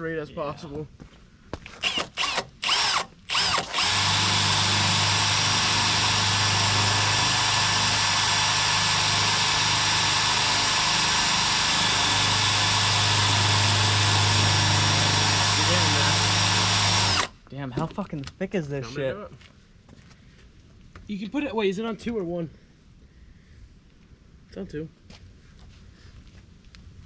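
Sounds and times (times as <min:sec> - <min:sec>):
power drill boring: 0:01.8 - 0:17.4.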